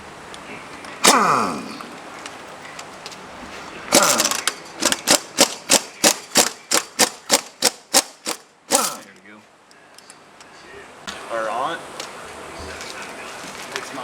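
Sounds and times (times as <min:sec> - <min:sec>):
sharp clicks: 0:03.9 - 0:09.1.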